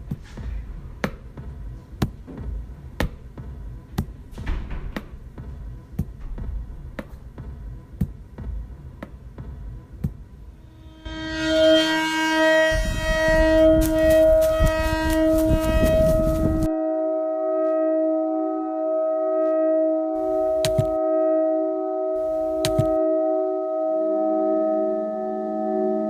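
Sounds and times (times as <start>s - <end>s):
low throbbing hum: 0.0s - 17.4s, 20.0s - 26.0s
siren-like tone: 10.6s - 26.0s.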